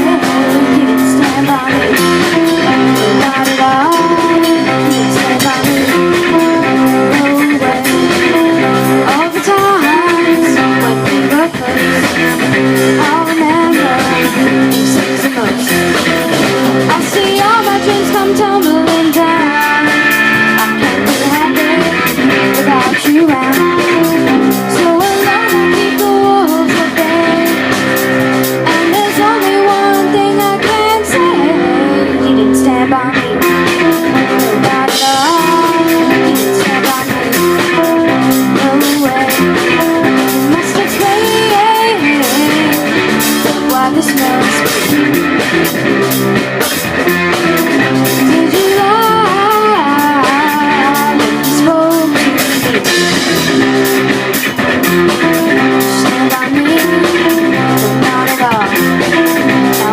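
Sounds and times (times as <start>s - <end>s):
bass guitar: 0.0s - 59.9s
drum kit: 0.0s - 59.9s
electric guitar: 0.0s - 59.9s
person singing: 0.0s - 59.9s.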